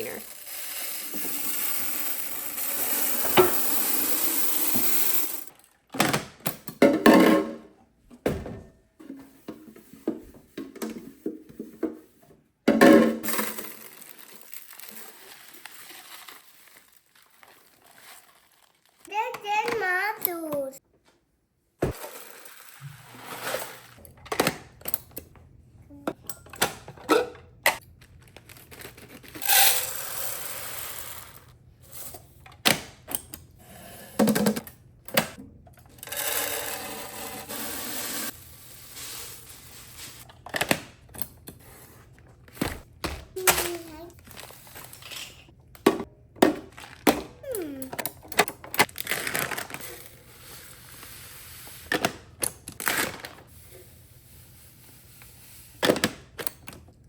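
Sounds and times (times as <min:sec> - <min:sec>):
containers and lids clattering: 0:04.6 - 0:07.8
dry food pouring into containers: 0:13.3 - 0:19.0.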